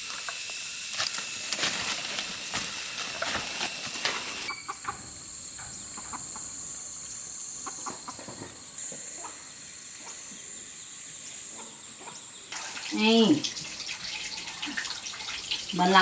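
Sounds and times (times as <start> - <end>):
high-pitched insect drone: 0.0 - 10.1
chickens clucking: 1.8 - 9.4.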